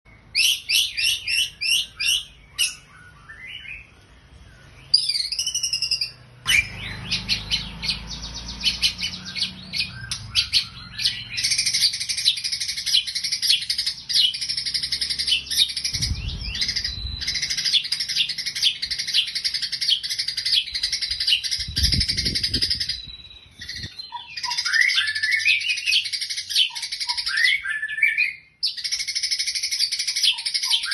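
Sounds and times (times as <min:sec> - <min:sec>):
songbird rapid chirping: 0:00.1 - 0:30.9
low thumps: 0:16.0 - 0:17.4.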